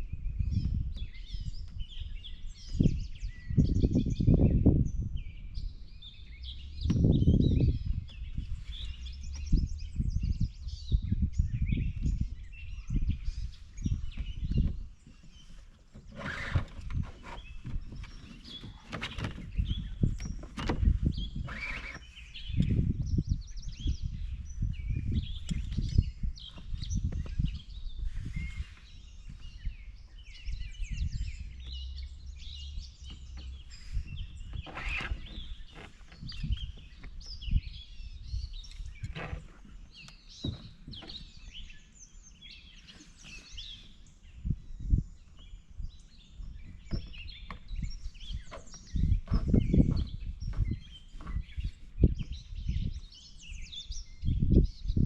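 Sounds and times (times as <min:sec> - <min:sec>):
birds chirping and singing: 0:00.0 - 0:55.0
low knocks and rumbling: 0:46.5 - 0:52.4.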